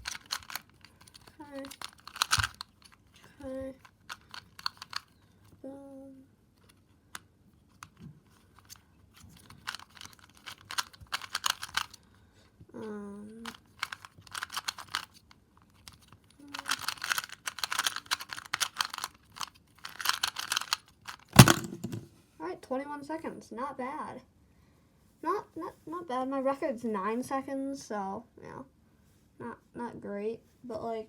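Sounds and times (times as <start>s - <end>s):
plastic cube clicking: 0.0s - 3.2s, 3.8s - 5.2s, 8.6s - 12.0s, 13.4s - 15.2s, 15.8s - 22.0s.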